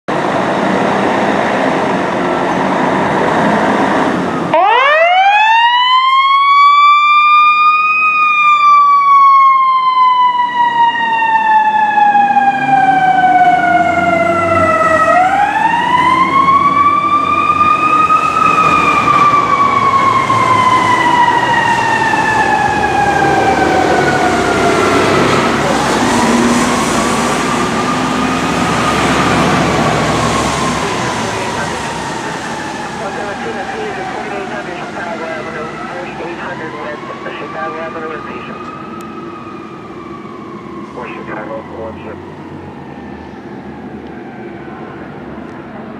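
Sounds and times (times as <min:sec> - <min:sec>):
mechanical fire engine siren: 0:03.6 - 0:45.4
loud rumbling noise: 0:12.2 - 0:44.0.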